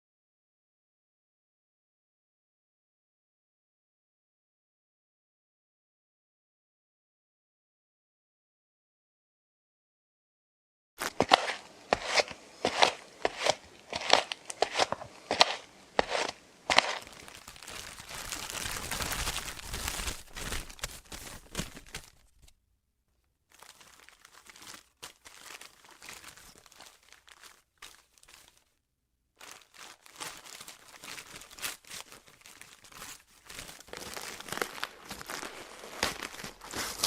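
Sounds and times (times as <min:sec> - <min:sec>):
wrapping paper crumpling and tearing: 0:11.0 - 0:22.5, 0:23.5 - 0:28.7, 0:29.4 - 0:37.0.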